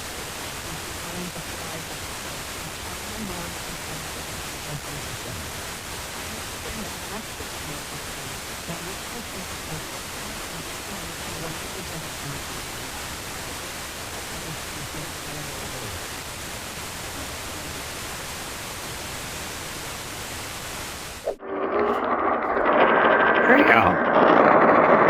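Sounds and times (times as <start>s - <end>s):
clear radio signal: 0.0s - 22.6s, 23.4s - 24.0s
radio static hiss: 0.0s - 22.8s, 23.4s - 24.0s.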